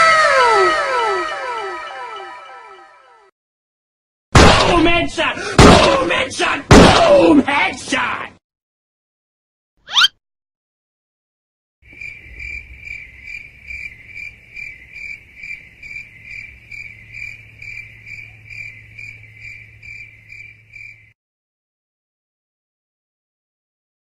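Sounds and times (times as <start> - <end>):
crickets chirping: 11.8 - 21.2.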